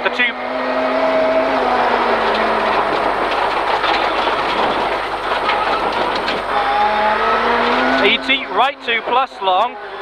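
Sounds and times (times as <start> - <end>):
rally car engine roaring: 0.0 - 10.0
tyre and road noise: 0.0 - 10.0.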